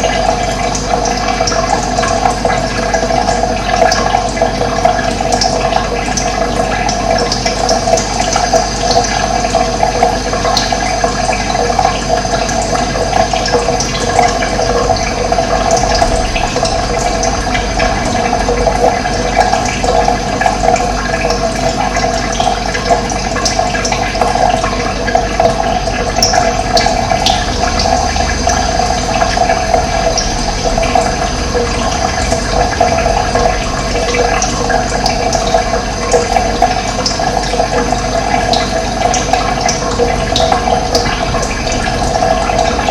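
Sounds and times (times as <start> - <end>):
running water flowing: 0.0 - 42.9.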